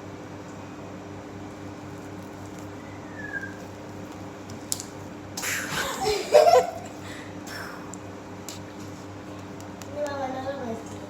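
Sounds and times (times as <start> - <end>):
girl giggling: 5.5 - 7.2.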